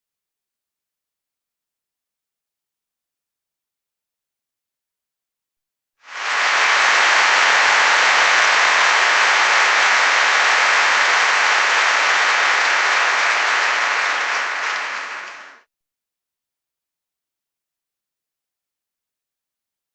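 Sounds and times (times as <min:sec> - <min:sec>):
audience applauding: 0:06.1 - 0:15.7.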